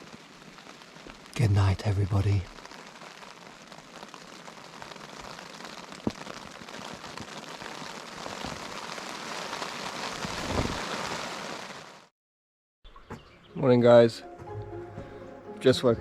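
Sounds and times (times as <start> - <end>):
heavy rain on a tent: 0.0 - 12.1.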